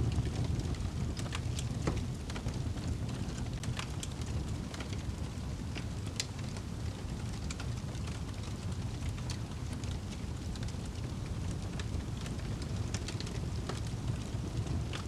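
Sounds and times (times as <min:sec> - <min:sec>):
low rumble of flame: 0:00.0 - 0:15.0
wood fire crackling and popping: 0:00.0 - 0:15.0.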